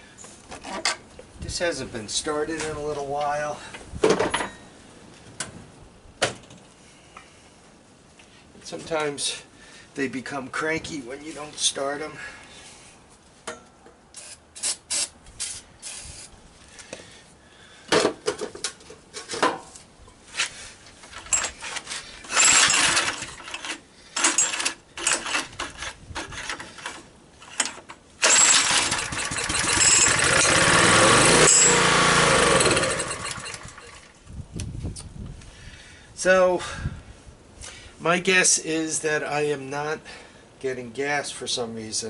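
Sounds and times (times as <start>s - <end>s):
recoil starter pulls: 21.2s - 27.0s, 27.6s - 34.2s
generator engine running: 28.2s - 34.1s.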